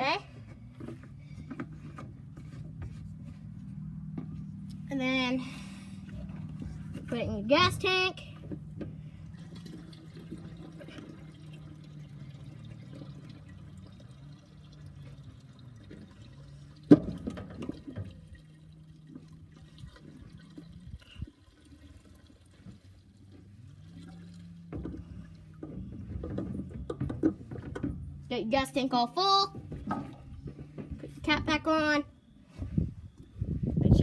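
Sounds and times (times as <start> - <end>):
low steady hum: 0.0 - 34.0
gasoline pouring into tank: 8.6 - 27.7.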